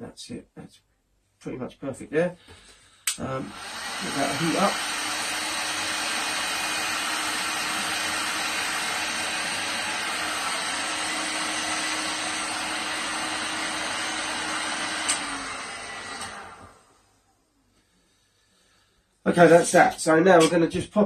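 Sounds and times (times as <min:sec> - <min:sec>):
heat gun blowing: 0:03.0 - 0:17.2.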